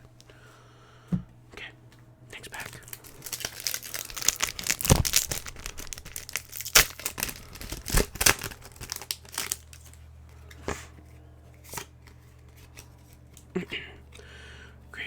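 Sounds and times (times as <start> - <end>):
foil wrapper crinkling and tearing: 2.5 - 10.0.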